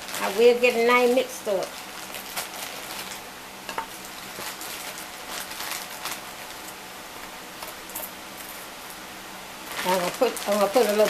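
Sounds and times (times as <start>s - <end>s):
soft rustling: 0.0s - 8.7s
steady hiss: 0.0s - 11.0s.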